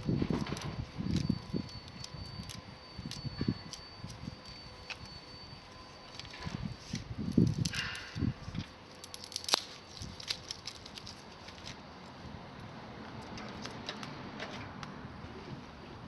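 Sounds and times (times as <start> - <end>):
campfire crackling: 6.9 - 11.9.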